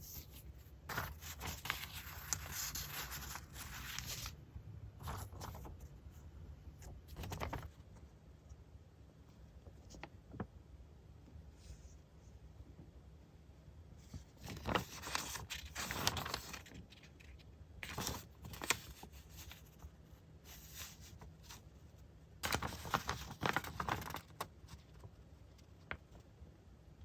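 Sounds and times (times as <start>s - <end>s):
paper and plastic packaging rustling: 7.1s - 7.9s, 14.1s - 19.9s, 22.4s - 25.2s.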